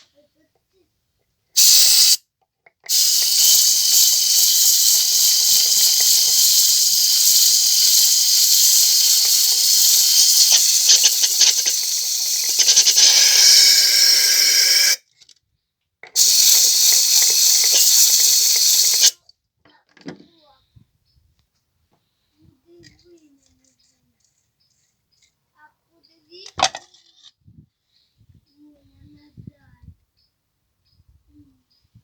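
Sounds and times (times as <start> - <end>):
aerosol spray can hissing: 1.6 - 2.2, 2.9 - 15.0, 16.2 - 19.2.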